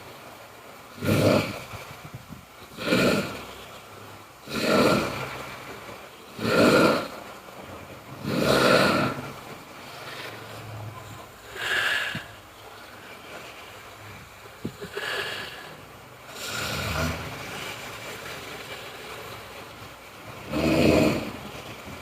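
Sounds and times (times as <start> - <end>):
person snoring loudly: 1.0 - 1.7, 2.7 - 3.4, 4.4 - 5.4, 6.4 - 7.2, 8.2 - 9.3, 16.3 - 17.6, 20.4 - 21.5.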